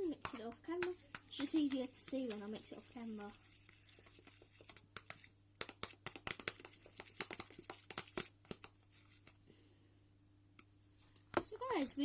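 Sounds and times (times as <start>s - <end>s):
spoon stirring wet slime: 0.0s - 9.4s.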